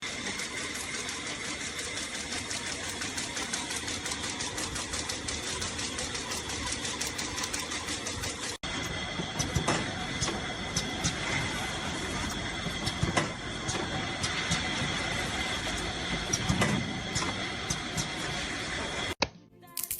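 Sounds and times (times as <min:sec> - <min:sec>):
high machine whine: 0:00.0 - 0:19.2
machine clicking: 0:01.8 - 0:11.2.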